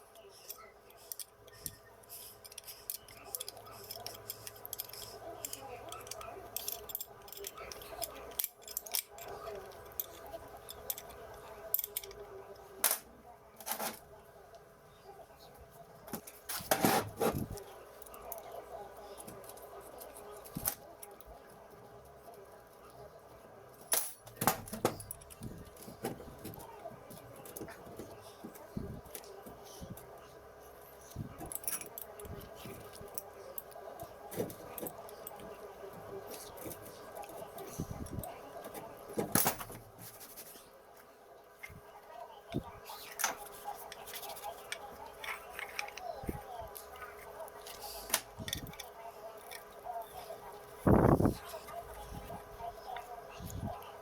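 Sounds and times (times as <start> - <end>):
metal parts clinking: 2.4 - 12.2, 43.1 - 49.8.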